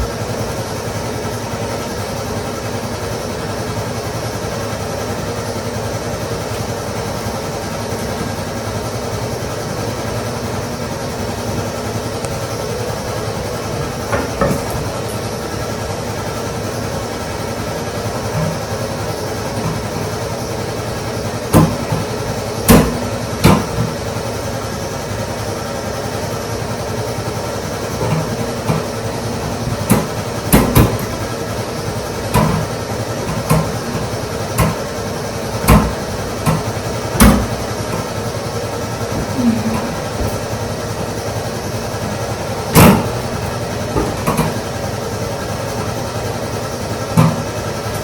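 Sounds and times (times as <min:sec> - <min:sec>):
steady low hum: 0:00.0 - 0:48.0
sharp knocks of hard objects: 0:14.1 - 0:14.9, 0:21.5 - 0:22.1, 0:22.7 - 0:23.9, 0:29.8 - 0:31.2, 0:33.3 - 0:34.9, 0:35.6 - 0:38.1, 0:42.8 - 0:43.2.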